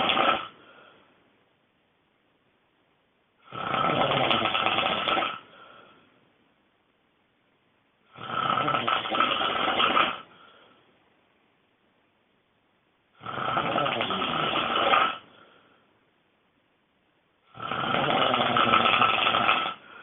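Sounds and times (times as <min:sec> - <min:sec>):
person snoring loudly: 0:00.0 - 0:00.6, 0:03.4 - 0:05.6, 0:08.1 - 0:10.3, 0:13.2 - 0:15.4, 0:17.5 - 0:20.0.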